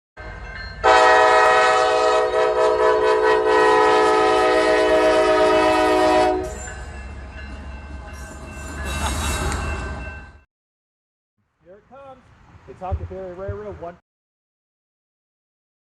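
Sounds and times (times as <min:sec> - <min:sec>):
rumble of passing train: 0:00.2 - 0:10.5
steam locomotive whistle: 0:00.8 - 0:06.7.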